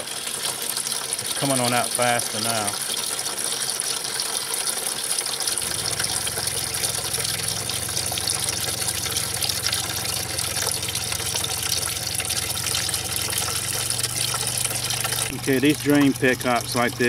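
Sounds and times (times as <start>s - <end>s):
liquid pouring into a pan: 0.0s - 17.0s
low steady hum: 5.6s - 17.0s.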